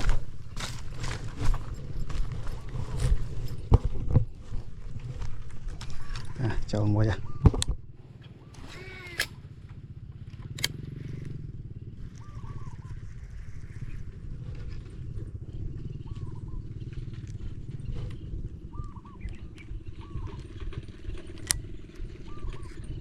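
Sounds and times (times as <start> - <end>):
motor droning: 0.0 - 23.0
sharp clicks: 8.5 - 9.4, 10.3 - 10.8.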